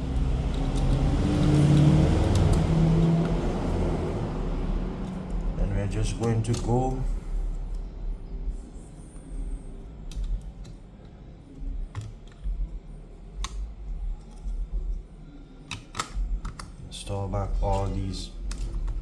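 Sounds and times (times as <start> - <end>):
small tools clicking and tapping: 0.0 - 3.4, 11.8 - 12.5, 15.6 - 16.8.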